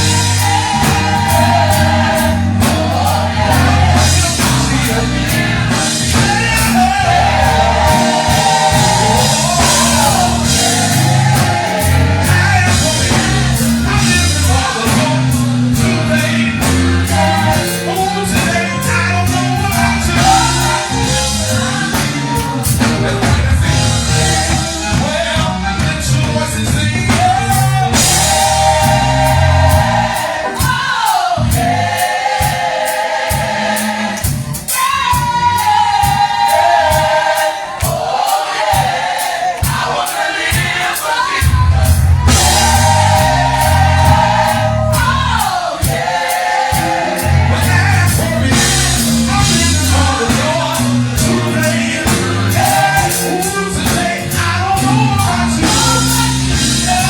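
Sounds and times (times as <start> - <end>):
bass guitar: 0.0 - 30.5, 41.4 - 45.5, 46.8 - 57.0
drums: 0.0 - 57.0
gospel choir singing: 0.0 - 57.0.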